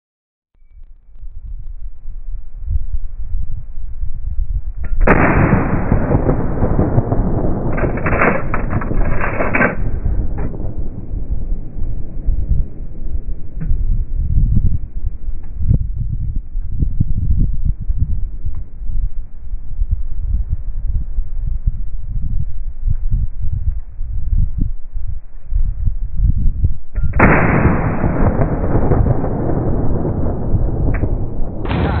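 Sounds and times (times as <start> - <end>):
crackling noise: 0.6 - 24.0, 26.8 - 32.0
low rumble: 0.6 - 32.0
shotgun blast: 4.9 - 13.8, 27.1 - 32.0.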